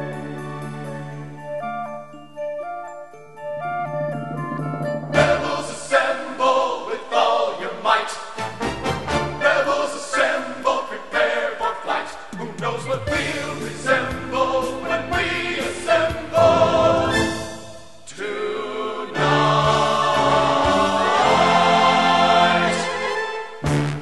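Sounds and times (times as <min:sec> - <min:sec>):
orchestra playing: 0:00.0 - 0:07.5, 0:19.2 - 0:24.0
choir singing: 0:03.6 - 0:23.8.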